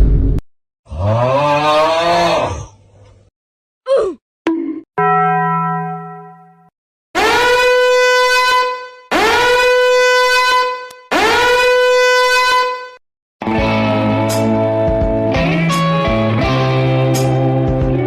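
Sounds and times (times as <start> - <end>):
long horn-like blasts: 7.2 - 13.0.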